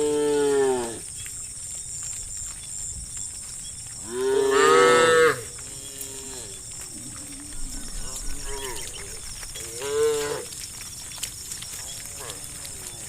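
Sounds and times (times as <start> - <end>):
cows mooing: 4.0 - 10.8, 11.8 - 13.0.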